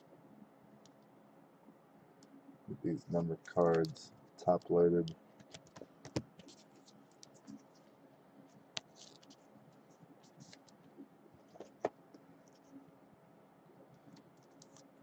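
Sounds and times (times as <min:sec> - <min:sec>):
cards scratching and clicking: 0:08.8 - 0:09.4.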